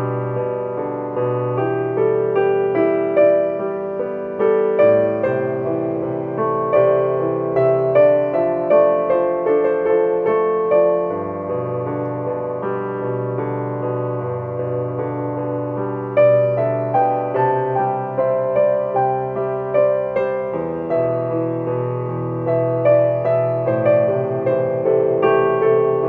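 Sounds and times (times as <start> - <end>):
solo piano melody: 0.0 - 26.0.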